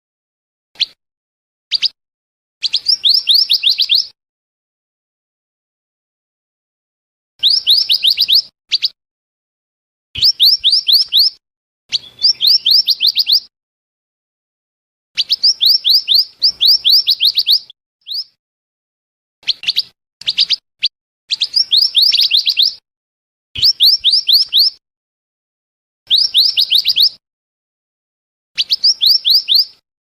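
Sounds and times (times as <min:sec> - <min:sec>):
high whistled bird calls: 0:01.7 - 0:02.0, 0:02.6 - 0:04.2, 0:07.4 - 0:09.0, 0:10.2 - 0:13.5, 0:15.2 - 0:18.4, 0:19.4 - 0:22.8, 0:23.6 - 0:24.8, 0:26.1 - 0:27.2, 0:28.6 - 0:29.8.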